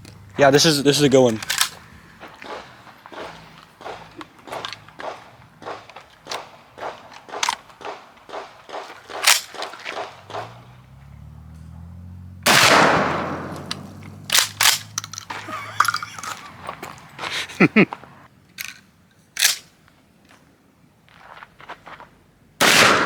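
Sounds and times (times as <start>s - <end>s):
handling clicks: 0.0s - 11.8s, 12.5s - 20.4s
sharp clacks: 0.0s - 11.8s, 12.5s - 18.8s
shotgun shot: 2.4s - 10.6s, 12.4s - 15.0s, 22.6s - 23.0s.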